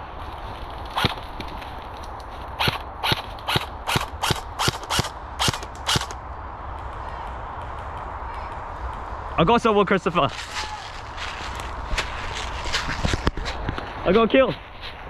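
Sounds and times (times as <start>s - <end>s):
airsoft gun shots: 2.6s - 6.2s.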